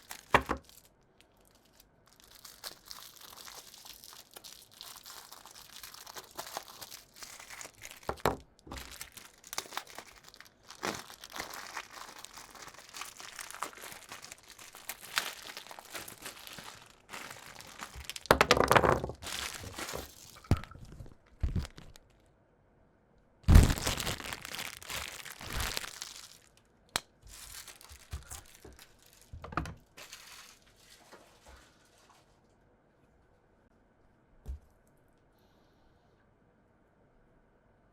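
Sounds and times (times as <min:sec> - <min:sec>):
packaging wrap crinkling and tearing: 0:00.0 - 0:22.2, 0:23.4 - 0:31.4.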